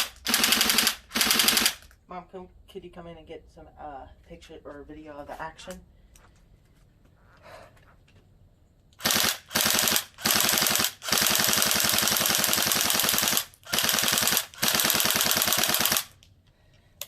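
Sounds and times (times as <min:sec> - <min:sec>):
airsoft gun firing bursts: 0:00.0 - 0:01.8, 0:09.0 - 0:16.2.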